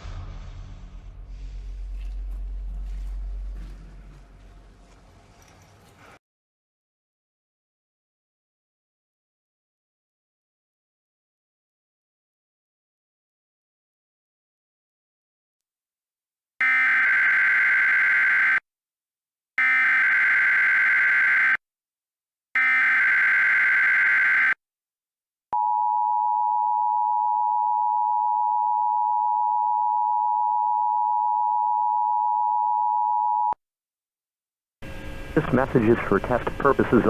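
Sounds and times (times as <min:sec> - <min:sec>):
screeching digital data bursts: 0:16.7 - 0:18.6, 0:19.9 - 0:21.6, 0:22.8 - 0:24.6.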